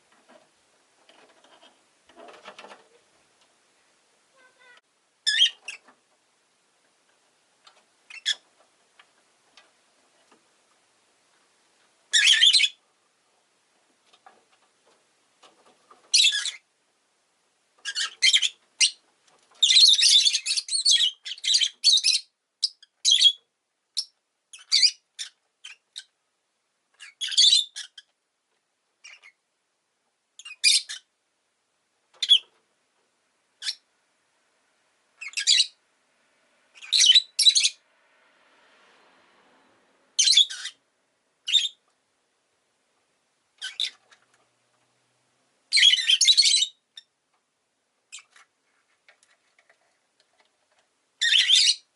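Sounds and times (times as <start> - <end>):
lovebird shrill chirps and squawks: 4.4 - 5.8, 8.1 - 8.4, 12.1 - 12.8, 16.1 - 16.6, 17.8 - 19.0, 19.6 - 23.4, 24.0 - 26.1, 27.0 - 28.1, 29.0 - 29.4, 30.4 - 31.1, 32.2 - 32.5, 33.6 - 33.8, 35.2 - 35.8, 36.8 - 37.8, 40.2 - 40.8, 41.4 - 41.8, 43.6 - 44.0, 45.7 - 47.1, 51.2 - 51.9.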